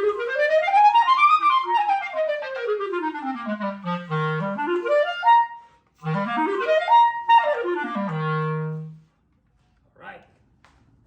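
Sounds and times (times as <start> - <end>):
clarinet playing scales: 0.0 - 9.1.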